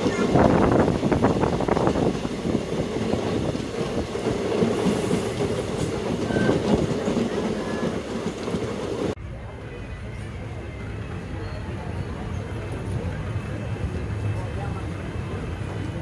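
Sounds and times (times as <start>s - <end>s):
train clatter: 0.0s - 9.2s
train wheels rumbling on rails: 0.0s - 16.0s.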